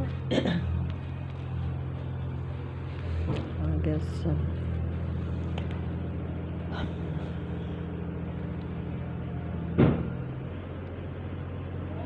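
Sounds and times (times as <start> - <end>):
machinery droning: 0.0 - 12.0
loud sharp knock: 9.8 - 10.1.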